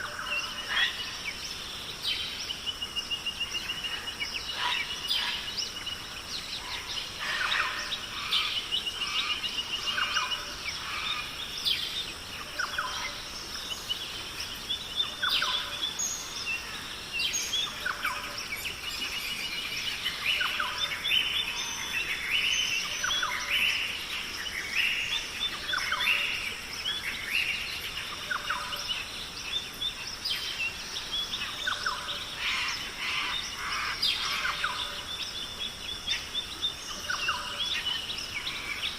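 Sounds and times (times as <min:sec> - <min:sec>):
birds calling and chirping: 0:00.0 - 0:38.9
steady high background hiss: 0:00.0 - 0:38.9.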